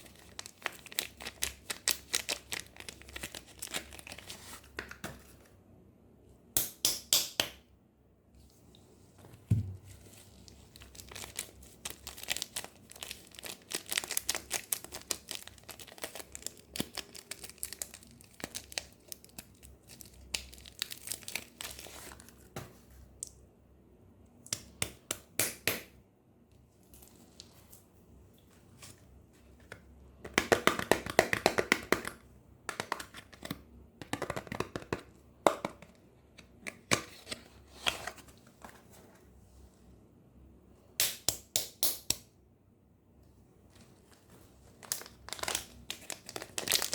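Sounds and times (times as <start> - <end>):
packaging wrap crinkling and tearing: 0.0 - 4.3, 10.3 - 22.4, 44.0 - 46.9.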